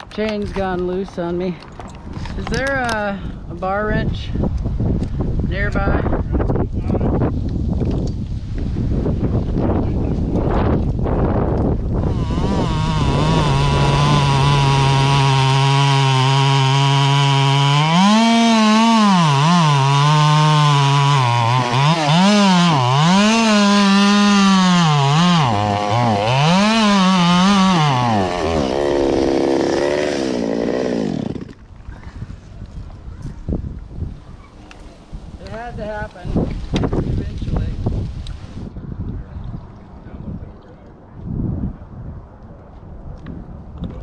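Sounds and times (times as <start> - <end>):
chainsaw engine revving: 12.0 - 31.6.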